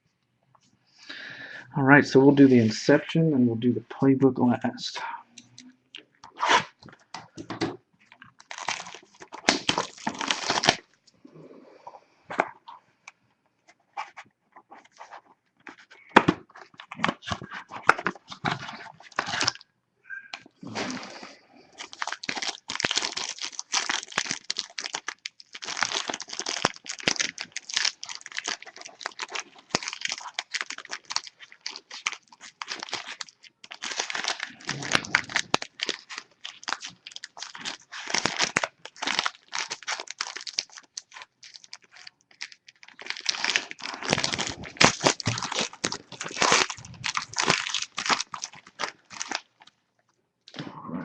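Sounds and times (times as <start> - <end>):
plastic shrink wrap crinkling: 5.4 - 11.1, 13.9 - 19.6, 21.8 - 49.8.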